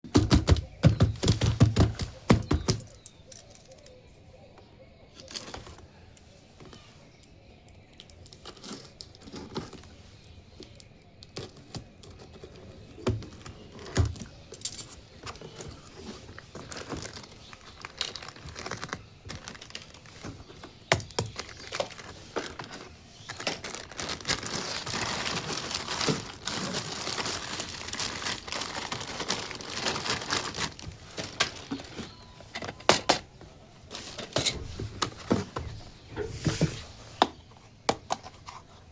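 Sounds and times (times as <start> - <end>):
plastic packaging crinkling: 15.2 - 33.2.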